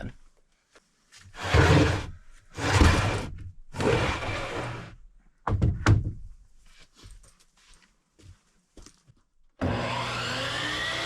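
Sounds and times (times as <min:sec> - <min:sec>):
table saw rush: 0:01.4 - 0:05.0, 0:09.6 - 0:11.0
wooden knocks and thunks: 0:05.4 - 0:06.4.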